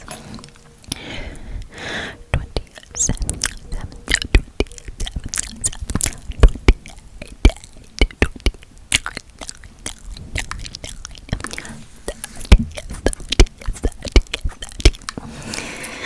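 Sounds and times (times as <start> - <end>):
wet mouth clicks and smacks: 2.4 - 15.2.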